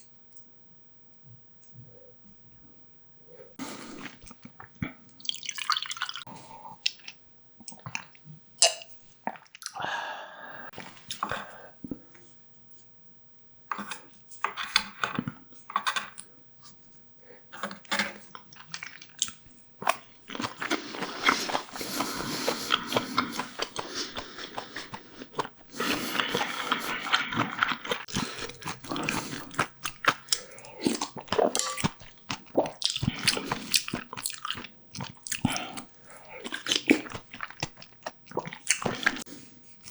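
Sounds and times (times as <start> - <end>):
person chewing and crunching food: 3.6 - 10.0, 13.7 - 16.8, 17.5 - 39.9.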